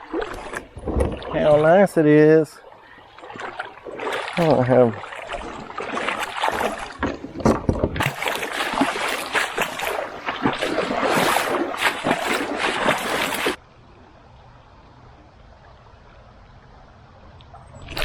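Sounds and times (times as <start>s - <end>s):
water splashing around kayak: 0.0s - 13.6s.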